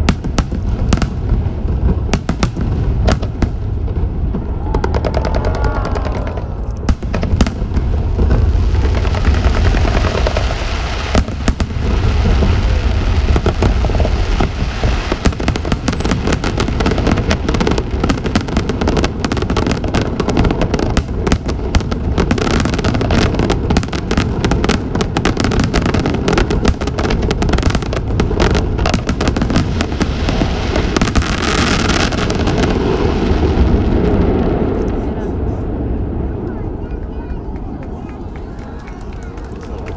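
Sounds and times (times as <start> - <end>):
firework bangs and crackling: 0.0 - 39.9
whistling firework shell: 15.4 - 16.6.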